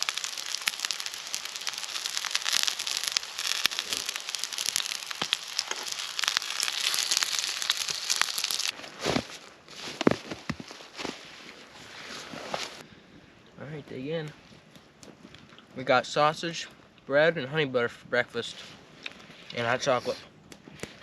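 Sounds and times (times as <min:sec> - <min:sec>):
campfire crackling and popping: 0:00.0 - 0:08.8, 0:20.4 - 0:21.0.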